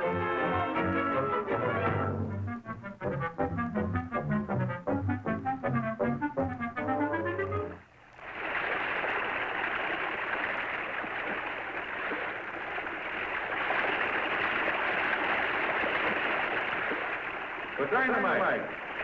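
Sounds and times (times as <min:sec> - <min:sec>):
cartoon rushing water: 0:08.1 - 0:19.0.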